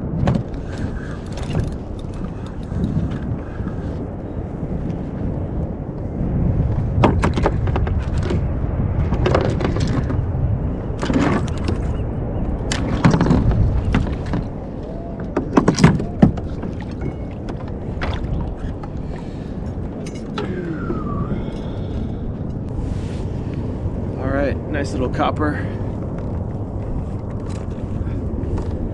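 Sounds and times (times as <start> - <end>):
wind rumble on microphone: 0.0 - 28.9
knocks and clatters on plastic kayak: 0.1 - 3.3, 7.0 - 10.2, 11.0 - 11.9, 12.7 - 14.6, 15.2 - 19.3.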